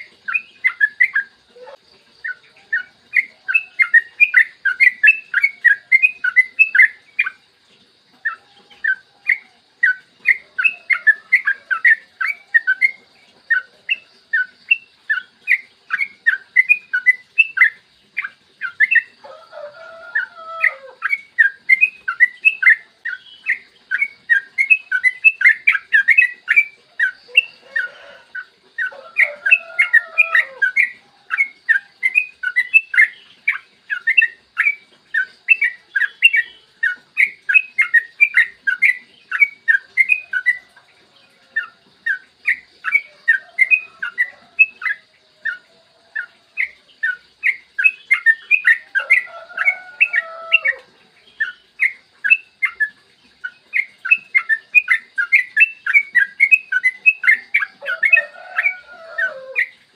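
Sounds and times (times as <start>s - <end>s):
bulbul singing chattering notes: 0.0s - 7.6s.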